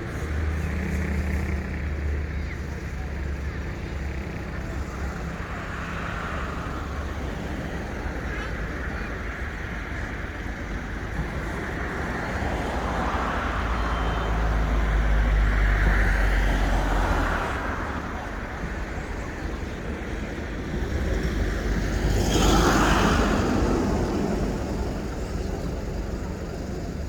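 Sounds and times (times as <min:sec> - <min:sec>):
motor vehicles passing: 0:00.0 - 0:27.0.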